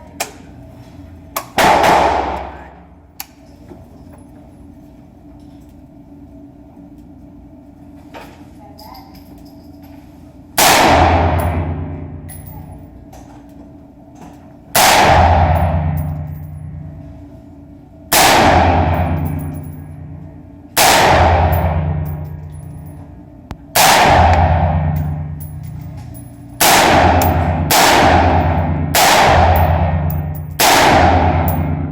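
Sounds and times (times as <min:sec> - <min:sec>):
rifle shots ringing: 0:14.8 - 0:16.9, 0:18.1 - 0:19.9, 0:20.8 - 0:23.0, 0:23.7 - 0:31.9.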